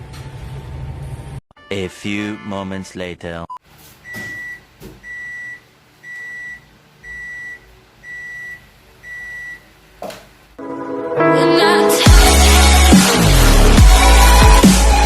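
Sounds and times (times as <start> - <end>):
washing machine beeping: 4.0 - 9.7
loud electronic music: 11.2 - 15.0.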